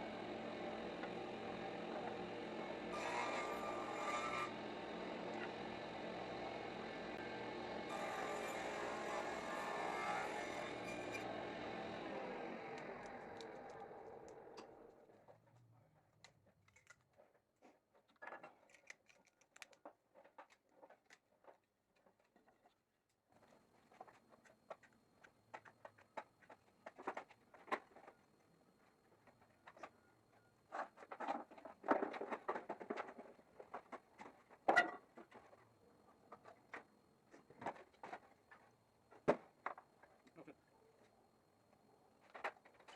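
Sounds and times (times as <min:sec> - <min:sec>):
wood pieces and tools clicking: 0:12.6 - 0:14.8, 0:16.2 - 0:17.3, 0:17.9 - 0:22.6.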